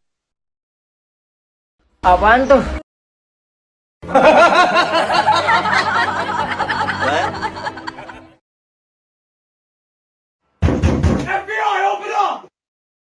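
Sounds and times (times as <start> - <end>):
villainous cackling laugh: 4.0 - 8.4.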